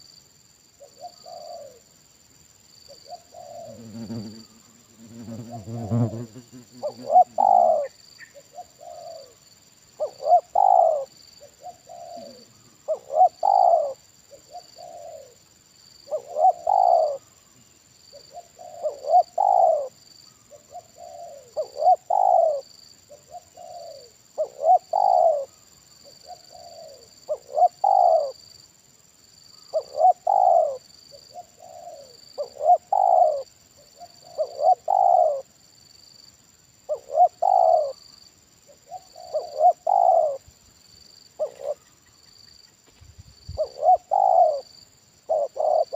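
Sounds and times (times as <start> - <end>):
high insect whine: 0.0 - 45.9
dove cooing: 0.9 - 1.8, 5.2 - 9.4, 10.0 - 15.4, 16.1 - 17.2, 18.3 - 25.5, 26.3 - 28.4, 29.7 - 35.5, 36.9 - 38.0, 38.9 - 40.4, 41.4 - 41.9, 43.6 - 44.7, 45.3 - 45.9.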